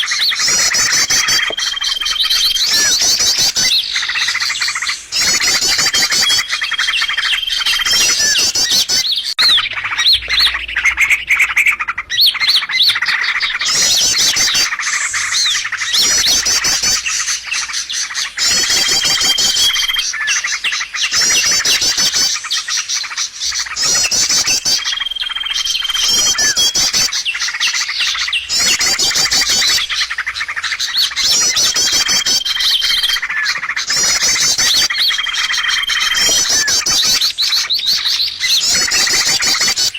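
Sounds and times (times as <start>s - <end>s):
high chirping bird trills: 0.0s - 39.9s
steady bird whistle: 0.0s - 39.9s.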